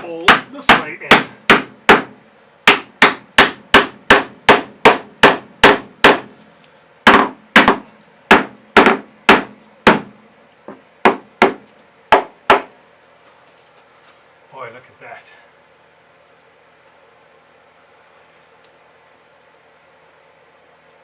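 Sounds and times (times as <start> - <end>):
hammer striking wood: 0.0 - 6.3, 7.0 - 12.7.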